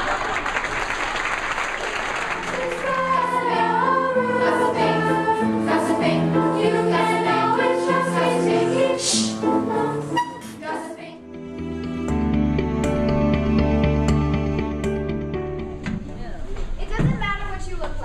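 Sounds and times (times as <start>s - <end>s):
applause: 0.0s - 2.8s
choir singing long notes: 2.4s - 15.3s.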